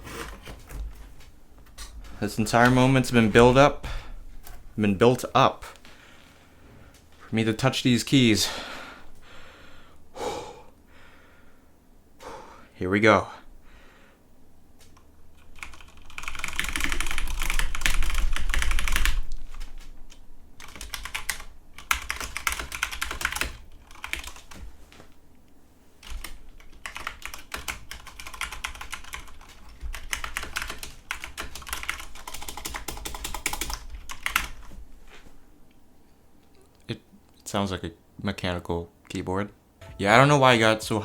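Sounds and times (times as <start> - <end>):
mechanical keyboard typing: 15.4 - 19.7, 20.6 - 24.6, 26.1 - 34.6.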